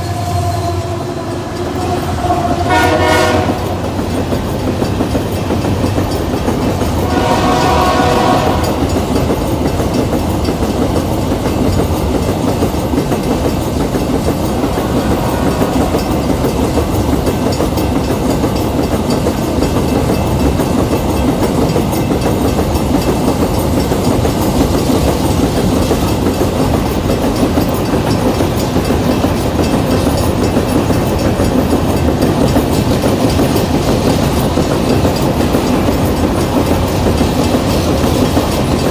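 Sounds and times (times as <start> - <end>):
train horn blast: 0.0 - 4.0, 7.0 - 9.0, 14.8 - 16.1
train wagons rumbling on rails: 0.0 - 38.9
wheels clicking over rail joints: 0.0 - 38.9.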